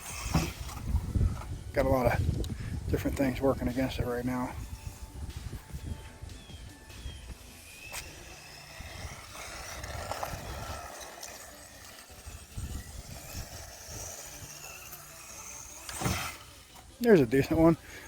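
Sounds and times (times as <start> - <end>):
rc truck motor whining: 0.0 - 18.0
tyres hissing on wet ramp: 8.0 - 16.7.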